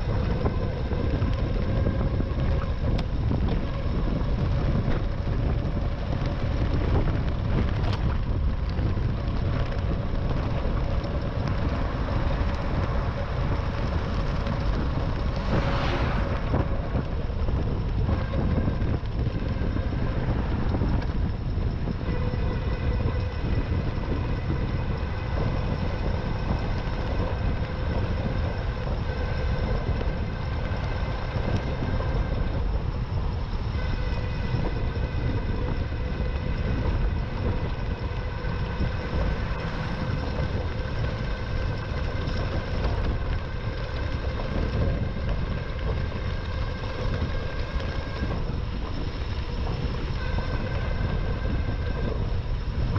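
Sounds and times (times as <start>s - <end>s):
thin whining drive tones: 0.0s - 52.9s
wind buffeting microphone: 0.0s - 52.9s.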